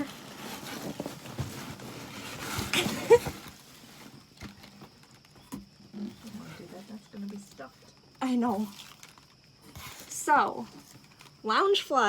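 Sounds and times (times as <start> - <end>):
paper rustling: 8.5 - 11.3.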